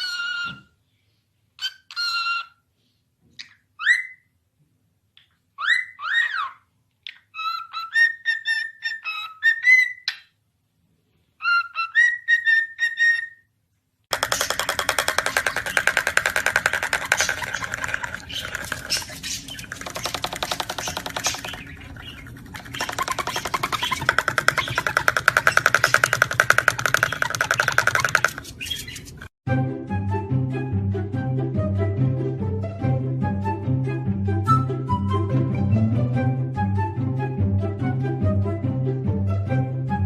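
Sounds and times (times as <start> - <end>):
parrot whistling: 14.2 - 29.2.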